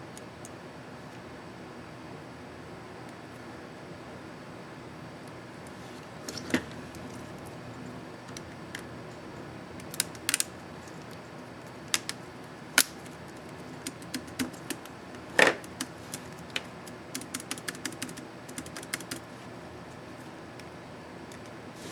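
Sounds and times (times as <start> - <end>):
laptop keyboard keys clicking: 9.8 - 11.2, 12.0 - 12.2, 12.8 - 19.3.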